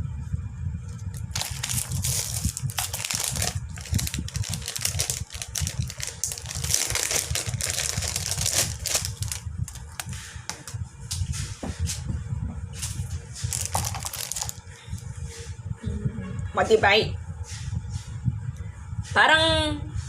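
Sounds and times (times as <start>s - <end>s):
low rumble: 0.0s - 20.0s
plastic packaging crinkling: 1.0s - 10.8s, 13.5s - 14.6s.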